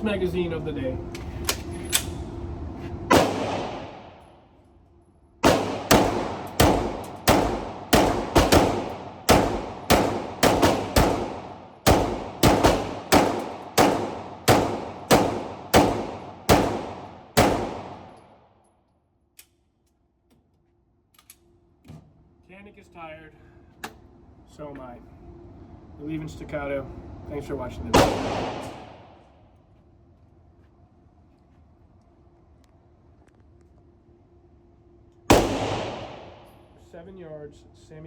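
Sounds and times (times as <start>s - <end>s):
pistol shots with echo: 3.1s - 4.2s, 5.4s - 18.2s, 28.0s - 29.2s, 35.3s - 36.5s.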